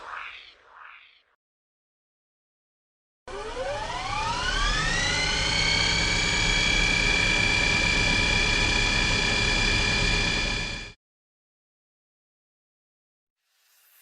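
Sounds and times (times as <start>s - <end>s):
engine whine climbing in pitch: 3.3s - 11.0s.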